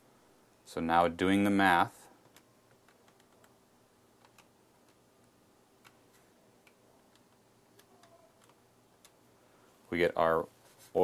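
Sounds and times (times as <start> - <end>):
calculator keys clicking: 2.2 - 3.6, 4.2 - 6.0, 6.6 - 9.2.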